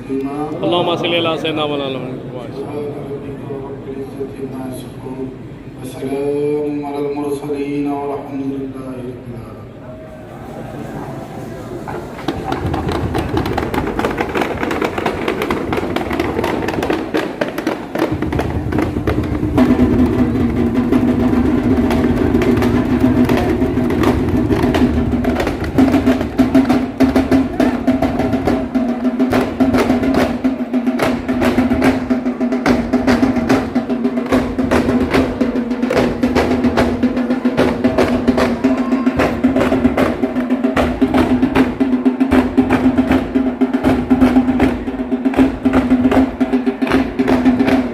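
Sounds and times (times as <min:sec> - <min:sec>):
rapid drumming: 0:11.9 - 0:47.9.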